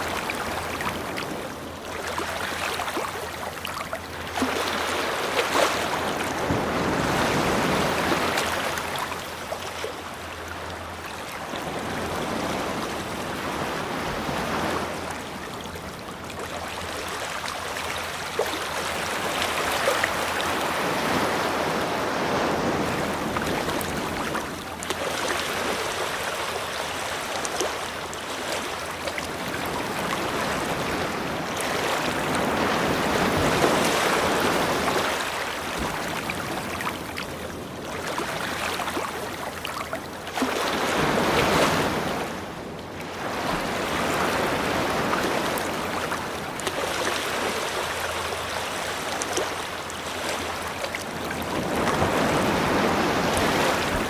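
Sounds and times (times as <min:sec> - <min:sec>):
ocean waves breaking on beach: 0:00.0 - 0:54.0.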